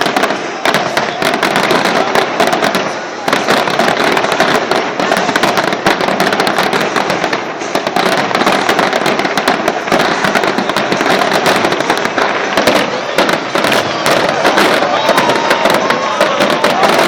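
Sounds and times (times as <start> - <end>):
fireworks and firecrackers banging: 0.0 - 17.0.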